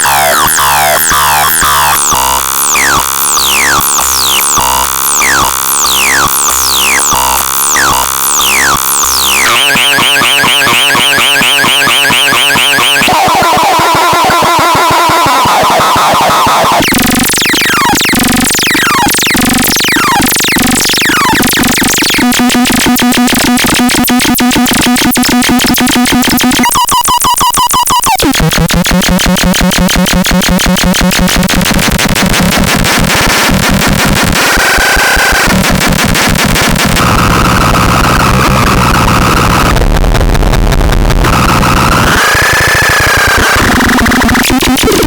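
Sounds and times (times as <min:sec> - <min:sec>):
synthesizer pulsing buzz: 0:00.0 - 0:26.8, 0:28.1 - 0:45.0
synthesizer wobbling tones: 0:00.0 - 0:26.8, 0:41.2 - 0:45.0
synthesizer laser zaps: 0:00.0 - 0:39.7, 0:41.2 - 0:45.0.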